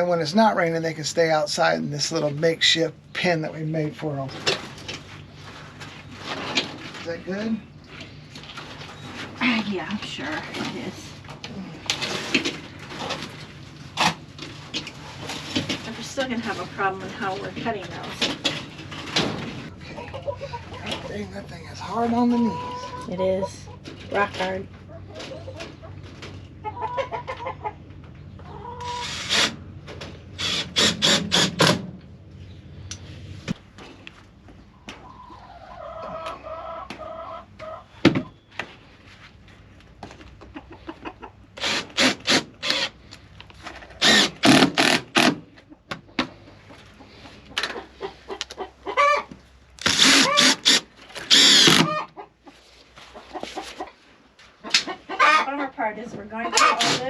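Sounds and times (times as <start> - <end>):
young chickens clucking: 16.4 - 29.1, 34.5 - 39.0, 39.8 - 41.6, 45.5 - 57.0.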